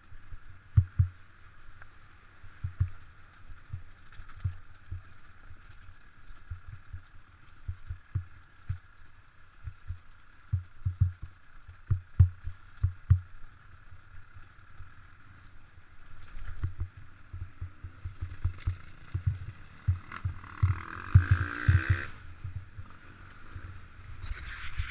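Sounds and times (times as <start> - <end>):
motorcycle engine hum: 0.0 - 24.9
motorcycle thumping over rough ground: 9.6 - 13.3, 16.4 - 22.8.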